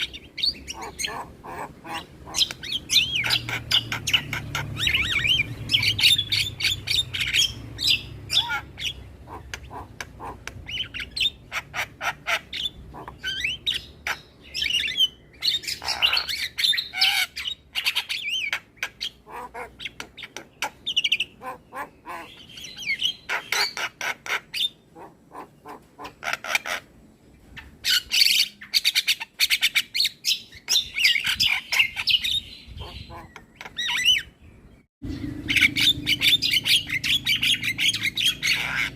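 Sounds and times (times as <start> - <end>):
bird squawks: 0.0 - 27.0, 27.6 - 34.4, 35.1 - 38.9
bird song with clicking notes: 2.3 - 8.2, 30.6 - 38.9.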